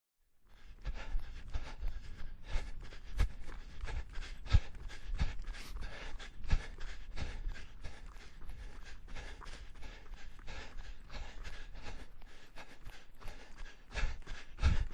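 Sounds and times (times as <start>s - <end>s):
person panting while running: 0.5s - 14.9s.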